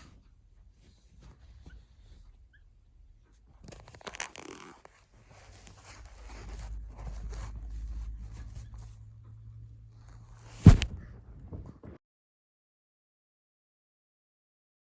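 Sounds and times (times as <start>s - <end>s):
soft rustling: 3.4s - 9.1s
low rumble: 5.4s - 11.6s
sharp knock: 10.6s - 11.1s.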